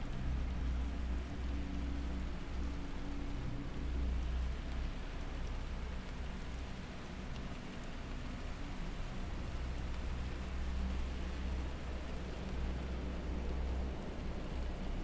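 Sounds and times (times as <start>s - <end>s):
rain: 0.0s - 15.0s.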